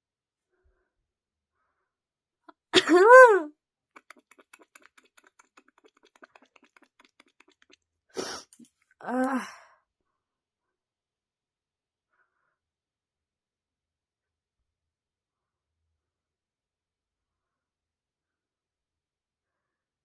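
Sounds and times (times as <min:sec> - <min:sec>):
woman sneezing: 0:02.6 - 0:03.5, 0:08.2 - 0:09.5.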